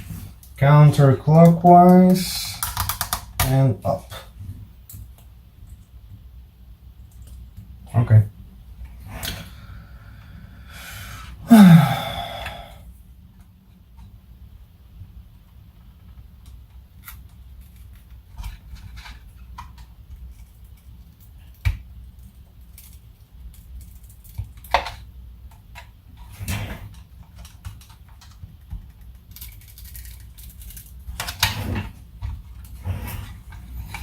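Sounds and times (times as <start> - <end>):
steady low hum: 0.0 - 16.7
plastic parts clicking and tapping: 1.4 - 3.5, 27.3 - 31.6.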